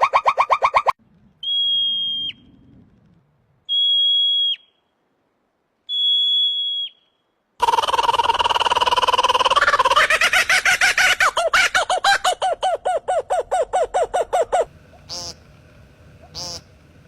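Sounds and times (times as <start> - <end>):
animal high whistles: 0.1 - 2.5
animal pulsing chatter: 16.2 - 16.7.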